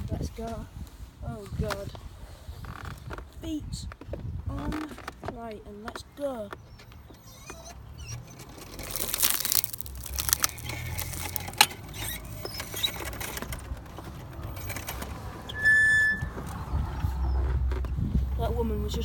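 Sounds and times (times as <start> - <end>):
glass cracking under tyre: 8.4 - 13.4.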